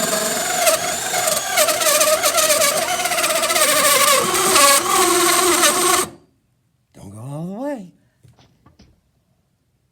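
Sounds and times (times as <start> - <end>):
power drill cutting wood: 0.0 - 6.2.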